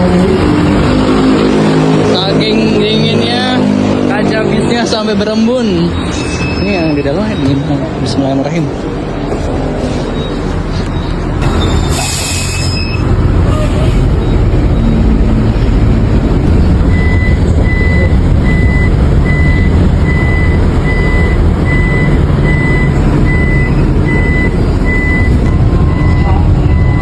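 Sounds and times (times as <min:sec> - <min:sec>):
truck engine rumbling: 0:00.0 - 0:27.0
reversing beeper: 0:04.6 - 0:08.2, 0:09.8 - 0:15.4, 0:16.6 - 0:27.0.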